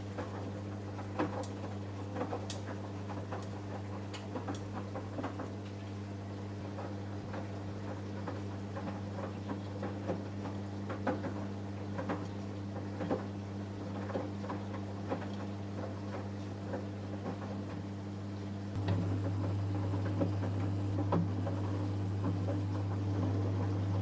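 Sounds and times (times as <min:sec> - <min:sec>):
washing machine humming: 0:00.0 - 0:24.0.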